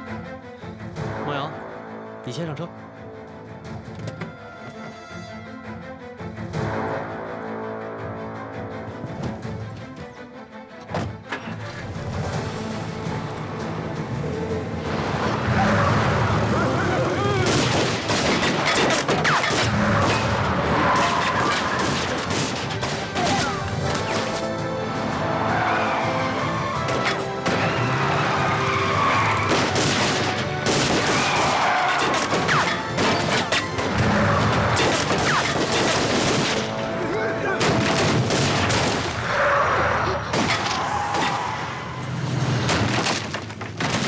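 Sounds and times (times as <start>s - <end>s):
dramatic background music: 0.0s - 44.0s
crashing impacts: 17.4s - 26.0s, 26.6s - 36.9s, 40.3s - 44.0s
gunfire bursts: 29.5s - 36.8s.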